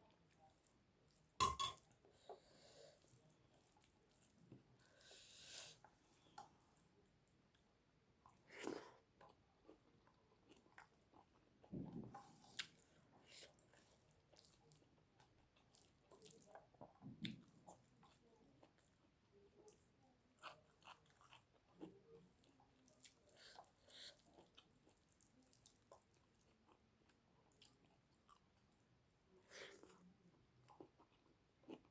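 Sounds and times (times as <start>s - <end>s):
person chewing: 8.2s - 11.4s, 12.1s - 18.9s, 20.4s - 28.7s, 29.6s - 31.9s.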